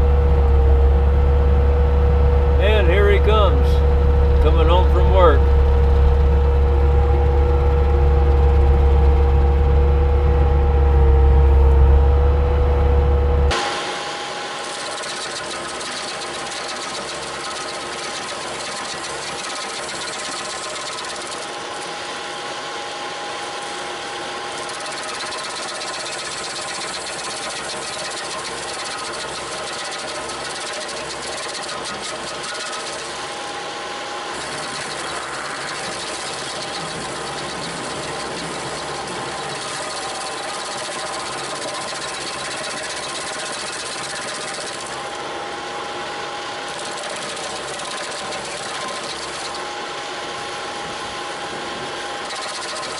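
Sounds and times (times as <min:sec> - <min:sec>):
track loader diesel engine: 0:00.0 - 0:13.7
stump grinder whine: 0:00.0 - 0:52.9.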